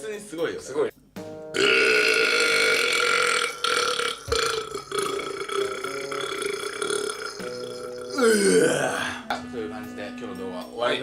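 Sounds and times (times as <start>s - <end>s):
man burping: 1.6s - 9.5s.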